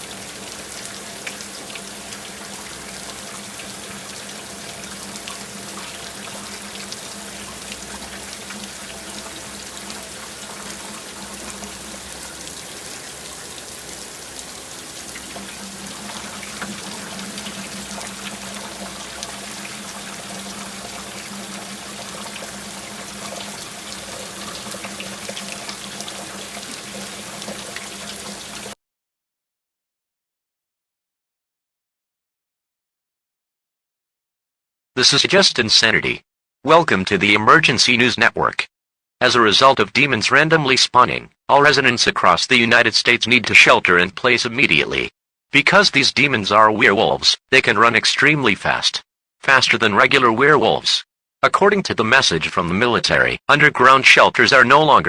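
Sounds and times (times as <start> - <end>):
rushing water-like noise: 0.0 - 28.8.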